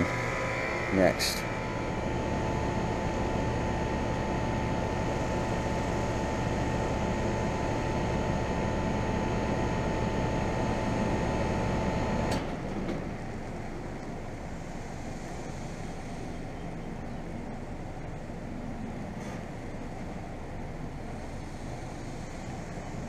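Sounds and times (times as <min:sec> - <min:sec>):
high whine: 0:00.0 - 0:12.5
air conditioner condenser humming: 0:00.0 - 0:23.0.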